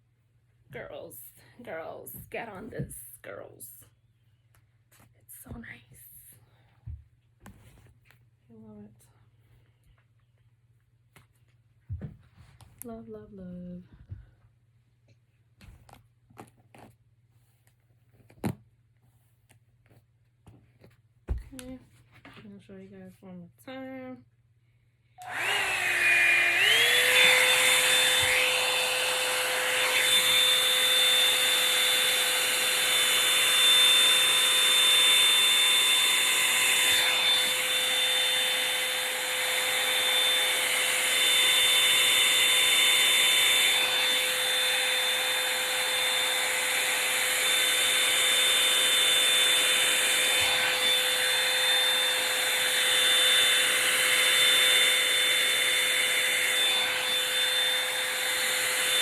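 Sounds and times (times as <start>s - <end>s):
hair dryer motor whining: 25.2s - 59.0s.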